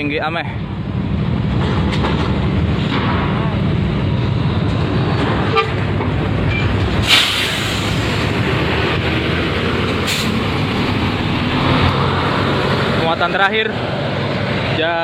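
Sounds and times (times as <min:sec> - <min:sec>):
bus engines rumbling: 0:00.0 - 0:15.0
air brake hisses: 0:07.0 - 0:08.1, 0:10.1 - 0:10.4.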